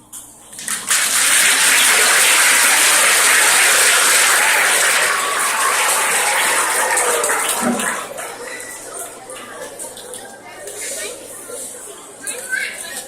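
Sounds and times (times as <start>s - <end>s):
audience applauding: 0.6s - 9.6s.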